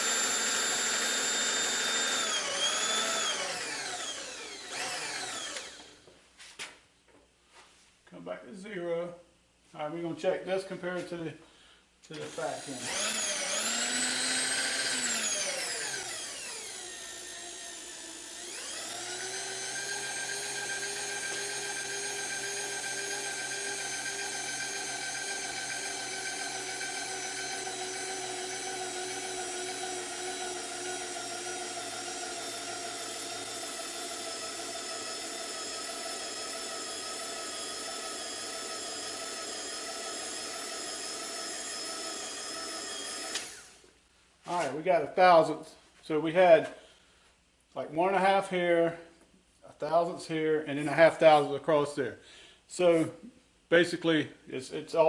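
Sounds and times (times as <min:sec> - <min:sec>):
electric motor whining: 0:00.0 - 0:06.0, 0:12.2 - 0:43.9.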